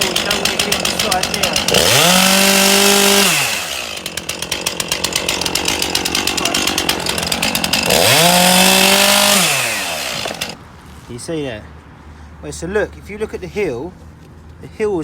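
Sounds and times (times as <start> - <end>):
chainsaw revving and idling: 0.0 - 10.6.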